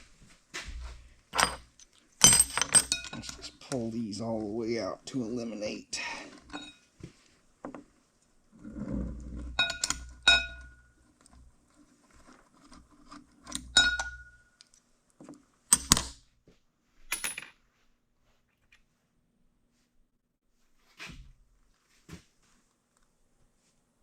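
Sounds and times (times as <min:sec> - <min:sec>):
metal tools clinking on metal: 0:01.4 - 0:03.8, 0:06.3 - 0:06.8, 0:09.5 - 0:10.9, 0:13.5 - 0:14.5.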